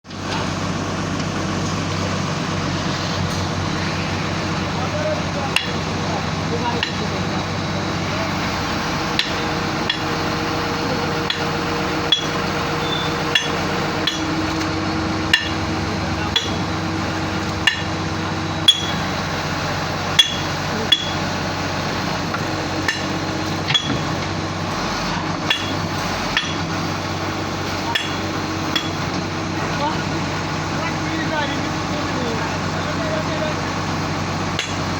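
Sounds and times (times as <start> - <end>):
drilling machine running: 0.1 - 34.9
sharp metallic clanks: 3.2 - 8.1, 8.9 - 19.2, 20.1 - 21.4, 22.1 - 24.4, 25.1 - 26.7, 27.7 - 29.2.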